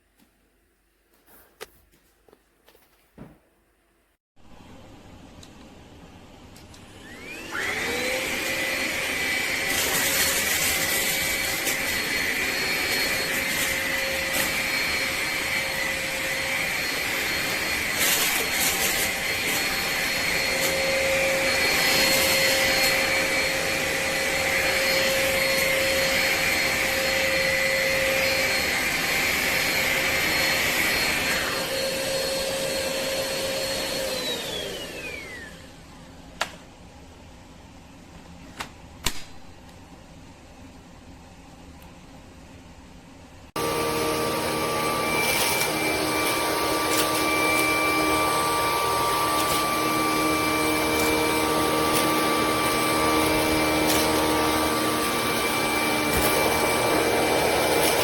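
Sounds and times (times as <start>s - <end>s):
vacuum cleaner motor whine: 6.4s - 36.1s, 43.6s - 58.0s.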